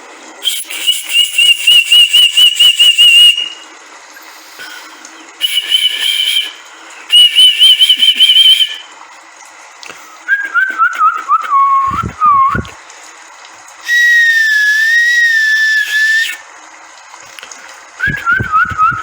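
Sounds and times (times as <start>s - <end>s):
pea whistle trilled blasts: 0.4s - 3.7s, 5.4s - 8.9s, 13.8s - 16.5s.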